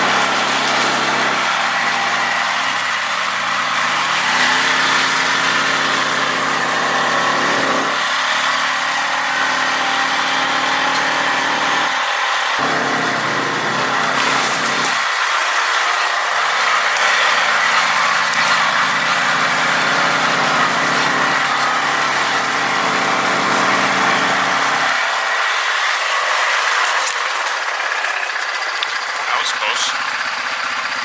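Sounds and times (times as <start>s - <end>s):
vehicle engine running: 0.0s - 31.0s.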